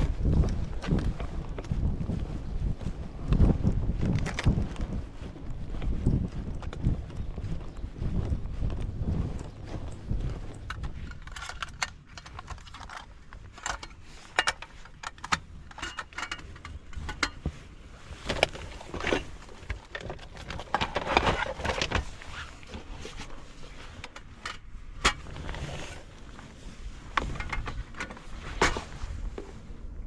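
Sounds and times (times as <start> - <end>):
low steady rumble: 0.0 - 30.0
clicks and knocks of hard objects: 4.0 - 4.8, 9.4 - 25.9, 27.1 - 28.9.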